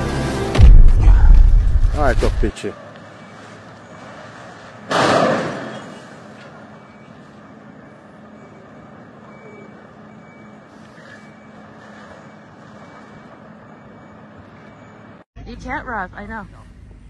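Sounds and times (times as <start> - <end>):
vehicle running: 0.0 - 17.0
sudden loud noise: 0.5 - 2.5.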